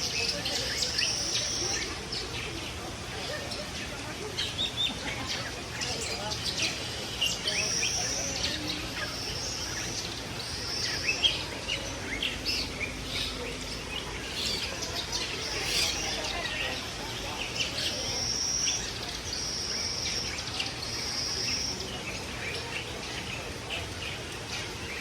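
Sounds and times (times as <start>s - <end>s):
caged birds chirping: 0.0s - 25.0s.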